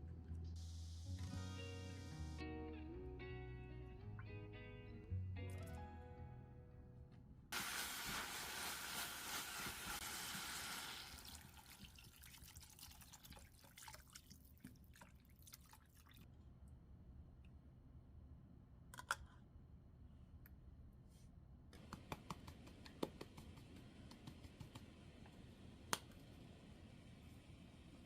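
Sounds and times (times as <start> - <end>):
water running from tap: 7.6 - 16.2.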